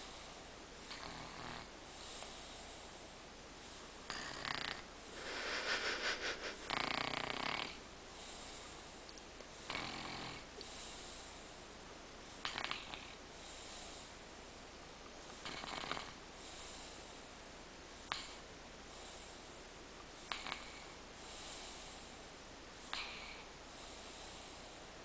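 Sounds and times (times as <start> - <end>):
man snoring: 0.9 - 1.7, 4.1 - 7.8, 9.7 - 10.5, 15.4 - 16.2, 20.3 - 20.9.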